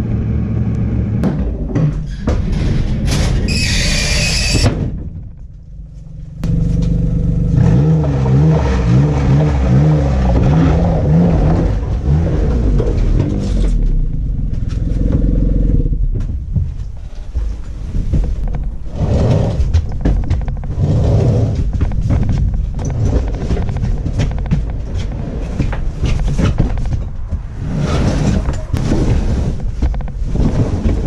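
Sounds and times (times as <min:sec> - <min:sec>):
snowmobile engine revving: 0:06.6 - 0:13.7.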